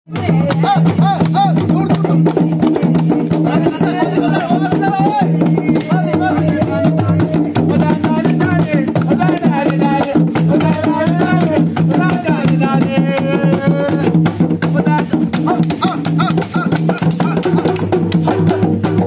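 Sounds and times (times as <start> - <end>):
person singing: 0.1 - 18.0
percussion beat: 0.1 - 19.0.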